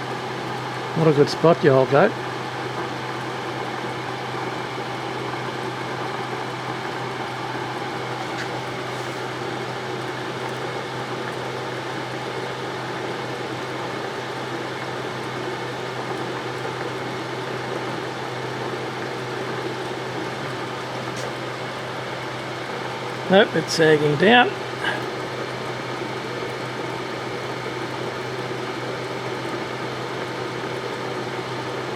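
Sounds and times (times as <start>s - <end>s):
grinder motor humming: 5.6s - 31.9s.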